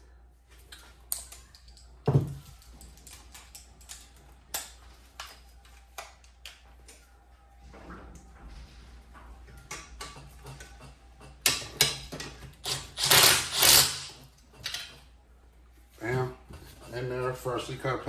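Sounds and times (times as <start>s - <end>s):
metal parts clicking and knocking: 0.7s - 5.4s, 9.7s - 15.0s.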